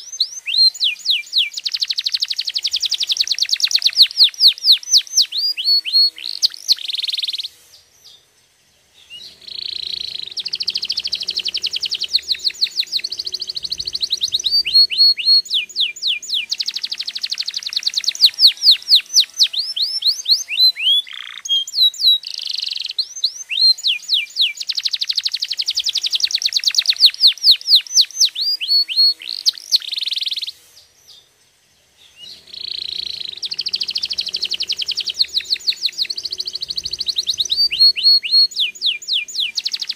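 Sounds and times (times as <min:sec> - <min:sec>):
canary singing trills: 0:00.0 - 0:31.3, 0:31.9 - 0:39.9.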